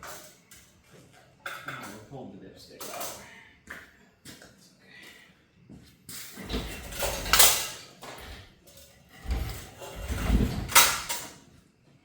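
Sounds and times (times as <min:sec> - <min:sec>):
metal clunks and scraping: 0:06.3 - 0:11.4.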